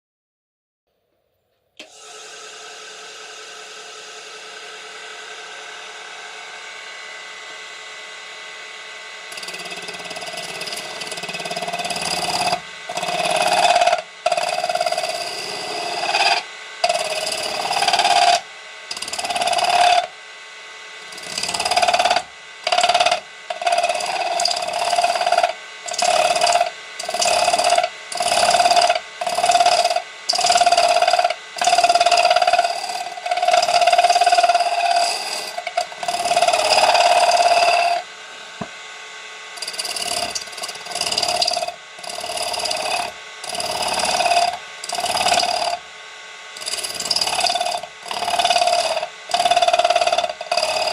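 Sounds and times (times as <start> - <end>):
lathe tool screeching on metal: 9.3 - 20.1, 21.0 - 38.0, 39.6 - 45.8, 46.6 - 50.9.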